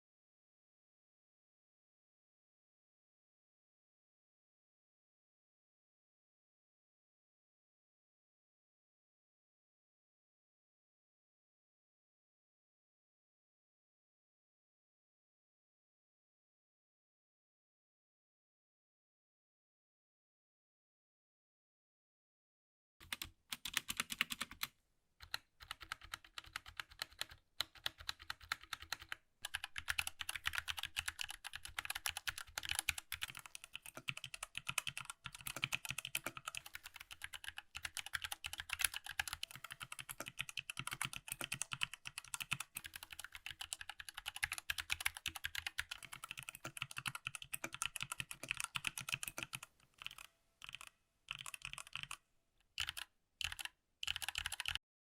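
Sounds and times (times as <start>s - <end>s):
mechanical keyboard typing: 23.0s - 52.2s, 52.8s - 54.8s.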